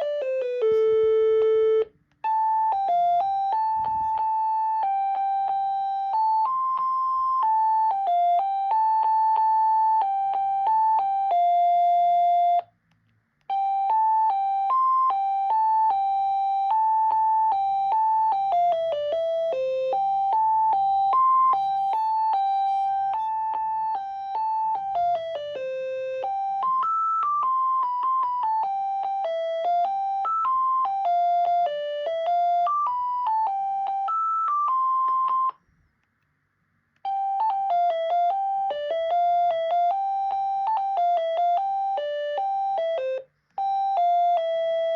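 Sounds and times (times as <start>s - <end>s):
electronic phone ringtone melodies: 0.0s - 12.7s, 13.5s - 35.6s, 37.1s - 44.9s.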